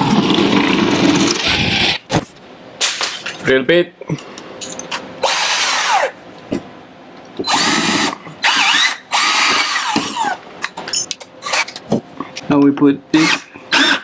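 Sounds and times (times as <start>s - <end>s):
power drill bursts: 7.4s - 10.4s, 13.2s - 14.0s.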